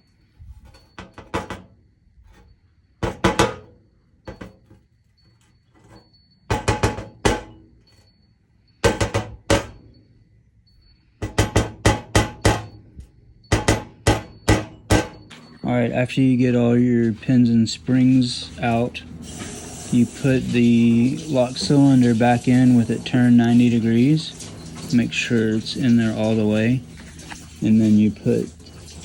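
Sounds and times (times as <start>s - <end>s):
lock housing knocking on hard surface: 3.0s - 3.7s, 6.5s - 7.6s, 8.8s - 9.8s, 13.5s - 15.2s.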